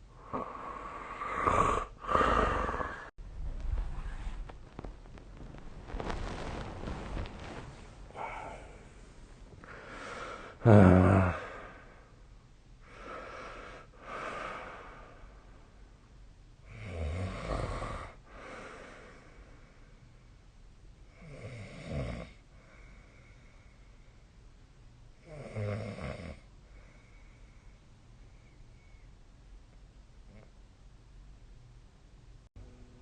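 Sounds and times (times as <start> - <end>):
quiet breathing: 0.0 - 4.9, 5.9 - 21.4, 22.3 - 24.6, 26.4 - 29.4
person snoring: 0.2 - 3.1, 8.1 - 8.9, 9.7 - 12.0, 16.7 - 19.2.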